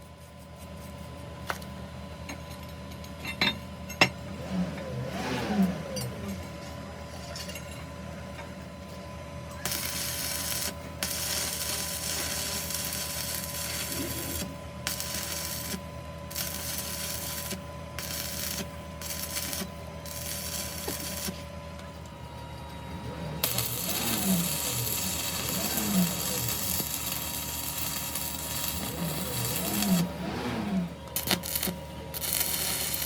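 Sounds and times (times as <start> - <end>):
steady machine hum: 0.0 - 33.0
harsh metalworking hiss: 23.3 - 33.0.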